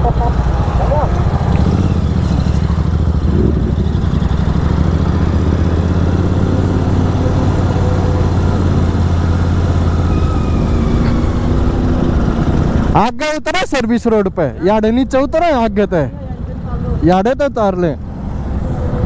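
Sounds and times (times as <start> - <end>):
motorcycle engine cruising: 0.0 - 13.1.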